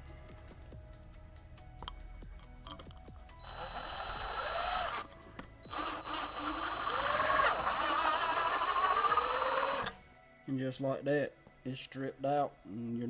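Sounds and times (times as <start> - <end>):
powered screwdriver motor whining: 3.4 - 10.0.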